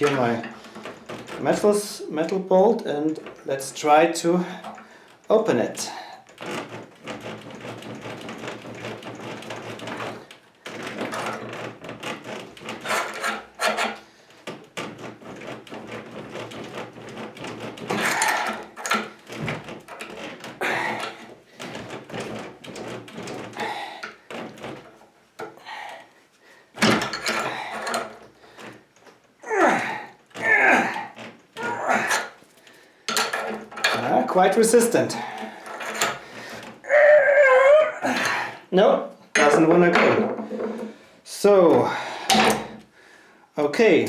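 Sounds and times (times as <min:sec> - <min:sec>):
metal knocking and clanking: 0:06.3 - 0:14.0, 0:14.8 - 0:25.6, 0:26.8 - 0:28.8, 0:33.1 - 0:36.8, 0:39.3 - 0:41.0, 0:41.7 - 0:42.8
metal scraping: 0:12.6 - 0:14.1, 0:17.6 - 0:23.8, 0:26.8 - 0:28.8, 0:29.7 - 0:36.8.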